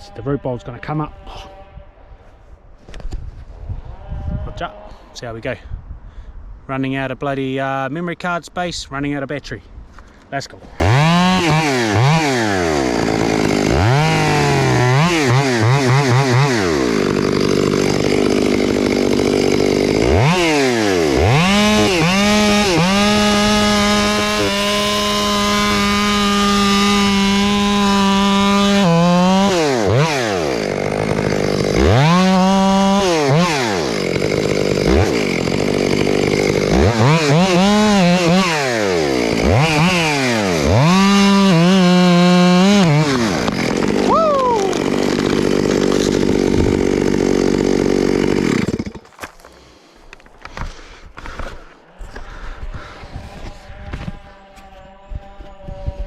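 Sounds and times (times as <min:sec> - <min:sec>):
chainsaw revving while cutting: 0:10.8 - 0:49.4.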